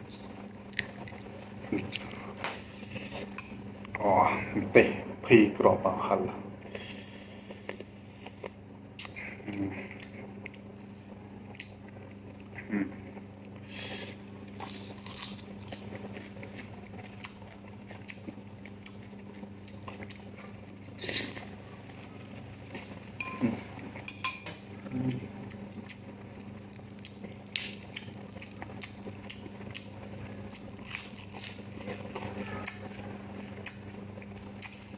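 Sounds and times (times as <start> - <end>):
person biting and chewing: 13.9 - 21.5, 25.5 - 32.8.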